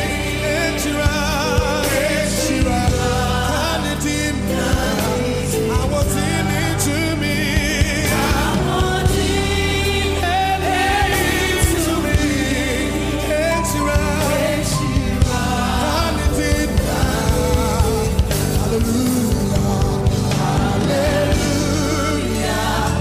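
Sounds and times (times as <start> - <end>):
bass notes: 0.0 - 23.0
singers with vibrato: 0.0 - 23.0
drum beat: 14.8 - 21.8.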